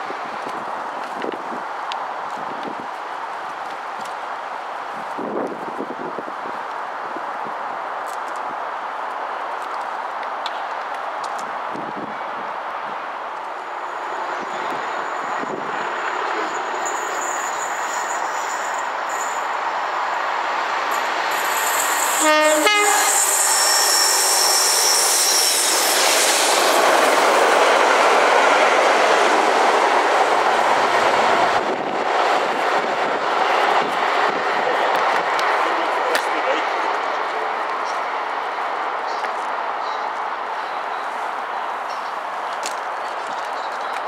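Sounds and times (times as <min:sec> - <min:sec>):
train passing at speed: 0:00.0 - 0:44.0
train horn blast: 0:22.0 - 0:24.2.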